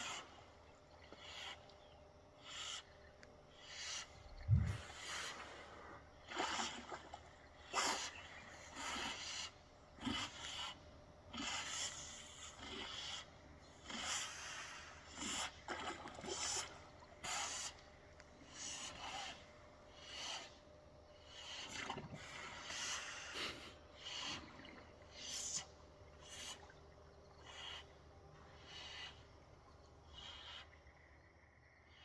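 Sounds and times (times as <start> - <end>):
hippos snorting: 3.8 - 17.8.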